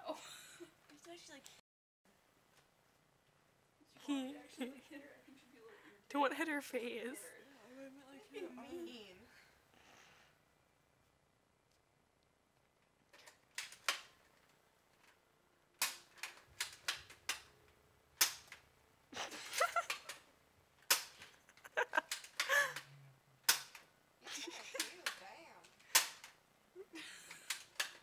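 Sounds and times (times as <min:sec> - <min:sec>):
toy dart gun plastic clicks: 0:15.8 - 0:17.5, 0:22.0 - 0:22.9, 0:23.5 - 0:23.9, 0:24.7 - 0:26.4, 0:27.3 - 0:28.0.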